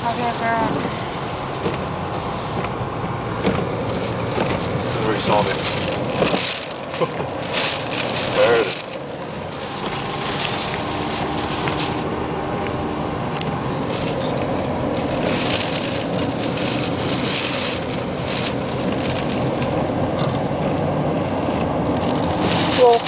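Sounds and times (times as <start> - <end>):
low rumble of wind and car: 0.0 - 23.0
rain and spray beating on car: 0.1 - 12.1, 13.6 - 20.0, 21.5 - 23.0.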